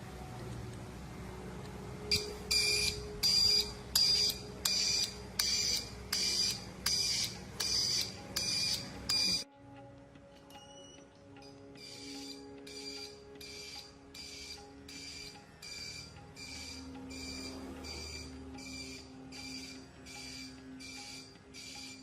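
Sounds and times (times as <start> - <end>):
low steady hum: 0.0 - 11.7
electronic high beeps: 2.1 - 9.4, 11.9 - 22.0.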